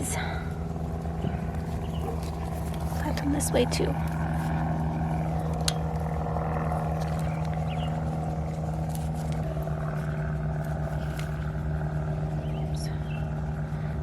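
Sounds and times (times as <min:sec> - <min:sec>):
engine drone: 0:00.0 - 0:14.0
faint scrapes and ticks: 0:04.0 - 0:12.2.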